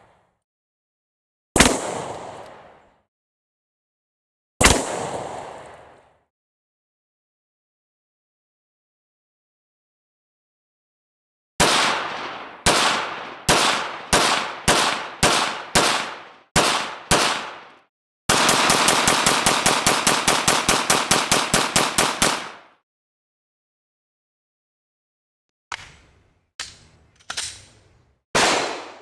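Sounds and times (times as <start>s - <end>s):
gunshots ringing off: 11.6s - 22.8s, 28.4s - 29.0s.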